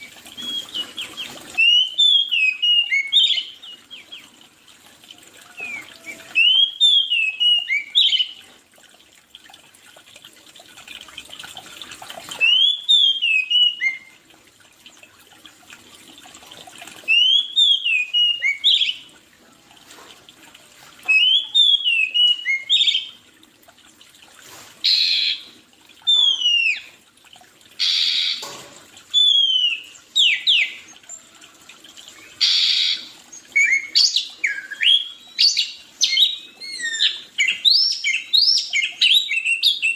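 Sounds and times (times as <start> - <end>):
songbird singing: 0.0 - 4.4, 5.6 - 8.5, 21.1 - 23.2, 29.2 - 31.3, 32.1 - 39.9.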